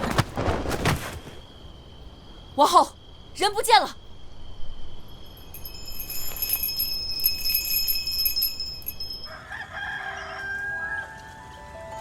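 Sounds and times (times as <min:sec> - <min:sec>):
high shimmering chirping: 0:05.0 - 0:09.4
rooster crowing: 0:09.3 - 0:11.5.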